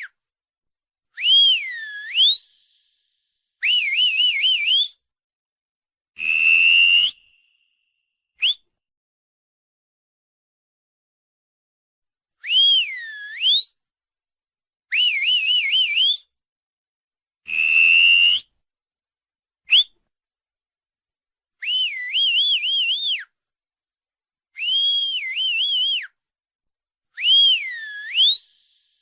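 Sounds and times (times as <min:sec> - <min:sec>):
short high whistles: 0:00.0 - 0:00.2, 0:01.1 - 0:05.0, 0:06.2 - 0:08.7, 0:12.4 - 0:13.8, 0:14.9 - 0:16.3, 0:17.5 - 0:18.6, 0:19.7 - 0:20.0, 0:21.6 - 0:23.4, 0:24.6 - 0:26.2, 0:27.1 - 0:29.0.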